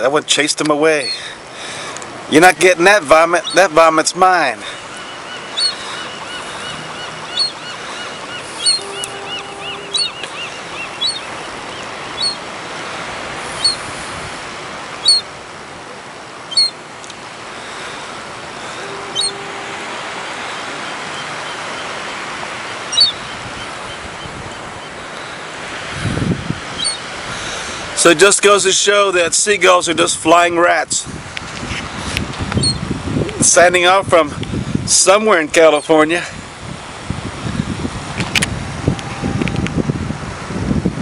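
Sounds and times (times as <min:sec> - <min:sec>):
steady outdoor hiss: 0:00.0 - 0:41.0
seagulls squawking: 0:01.0 - 0:13.9, 0:15.0 - 0:15.3, 0:16.4 - 0:16.8, 0:17.6 - 0:25.8, 0:26.6 - 0:27.7
repeated chirps: 0:04.8 - 0:11.4, 0:18.8 - 0:19.6.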